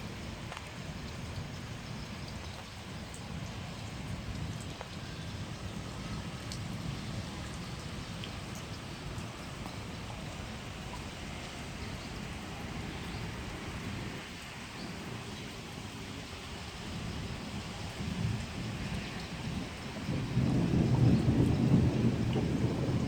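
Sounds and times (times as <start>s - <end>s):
steady rain falling: 0.0s - 23.0s
low rumble of thunder: 3.3s - 23.0s.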